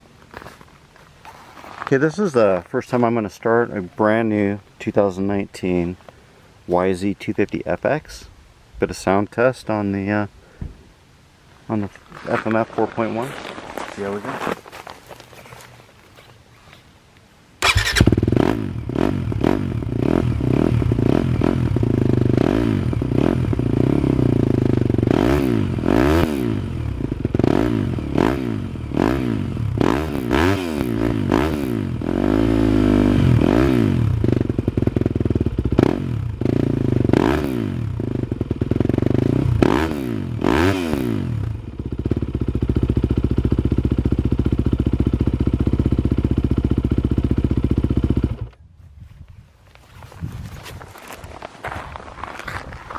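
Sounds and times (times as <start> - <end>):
motorcycle engine revving and idling: 17.6 - 48.6.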